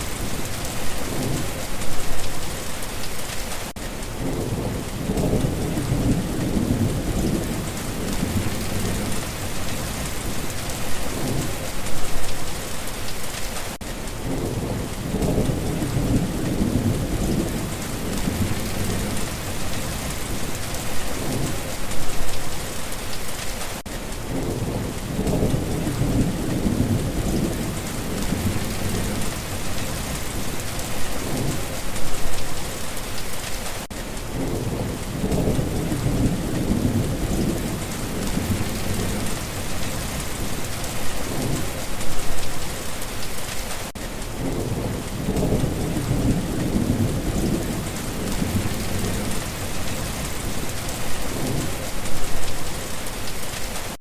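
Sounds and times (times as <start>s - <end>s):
steady rain: 0.0s - 54.0s
low rolling thunder: 4.2s - 10.3s, 14.2s - 21.9s, 24.2s - 32.0s, 34.3s - 42.3s, 44.4s - 52.5s.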